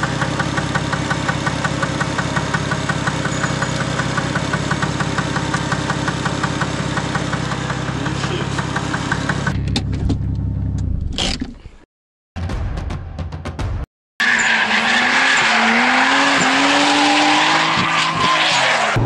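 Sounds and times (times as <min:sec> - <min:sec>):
rapid engine tapping: 0:00.0 - 0:10.5
car engine drone: 0:00.0 - 0:11.3, 0:14.2 - 0:19.0.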